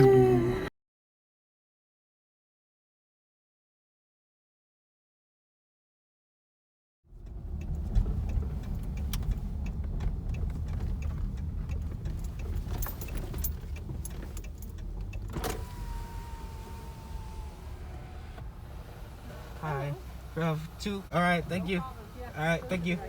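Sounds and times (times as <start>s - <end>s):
car driving rumble: 7.1s - 23.0s.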